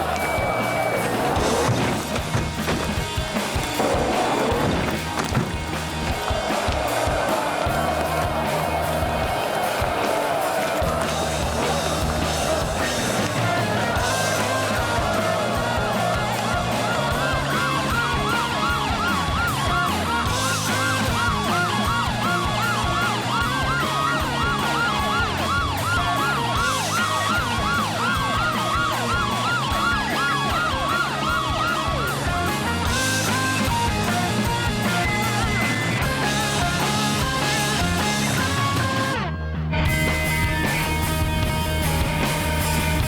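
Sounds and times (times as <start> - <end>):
siren wailing: 10.6 - 35.9.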